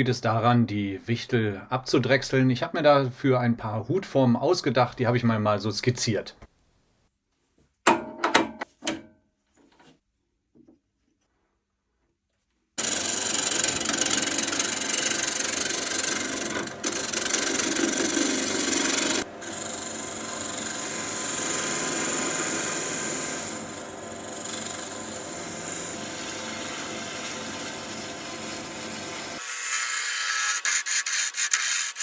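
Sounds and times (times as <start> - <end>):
wood lathe turning tool scraping: 12.8 - 32.0.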